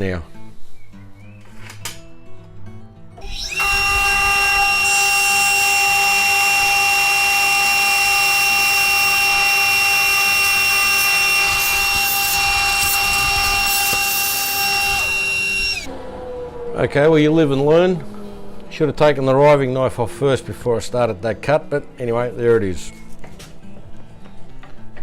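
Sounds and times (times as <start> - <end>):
table saw motor whining: 3.2 - 18.6.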